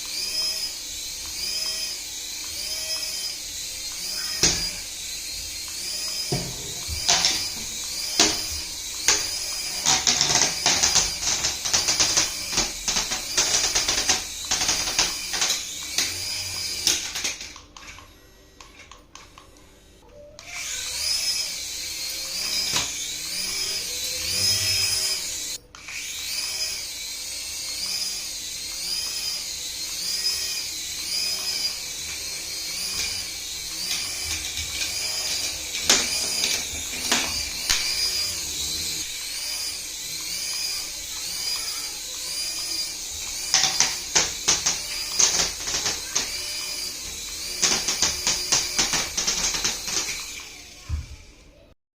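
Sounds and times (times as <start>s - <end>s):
electric toy motor whine: 0.0s - 51.7s.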